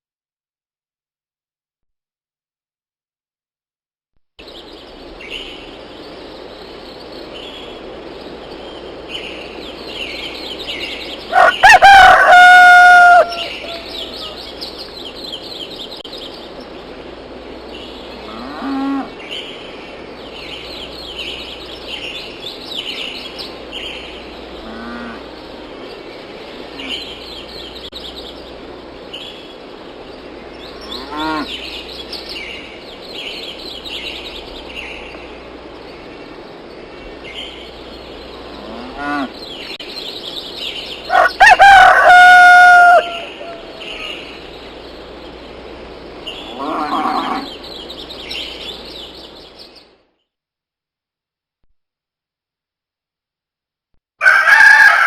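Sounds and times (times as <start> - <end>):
small birds chirping: 4.4 - 11.6, 13.2 - 41.8, 43.0 - 50.3
fowl calls: 11.3 - 14.4, 41.1 - 44.1
rooster crowing: 11.3 - 14.4, 41.1 - 43.8, 54.2 - 55.0.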